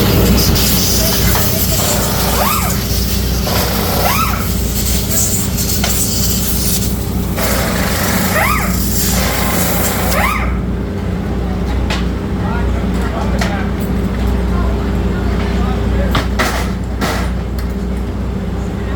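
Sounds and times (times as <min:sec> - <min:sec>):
machinery drone: 0:00.0 - 0:13.0
rising and falling whines: 0:07.3 - 0:10.8.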